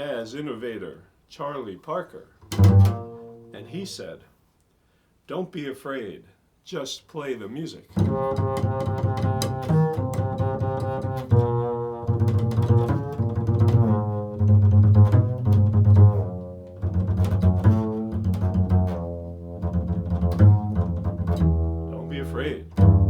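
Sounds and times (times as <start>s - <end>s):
bowed low string instrument: 2.4s - 4.0s, 7.9s - 23.0s.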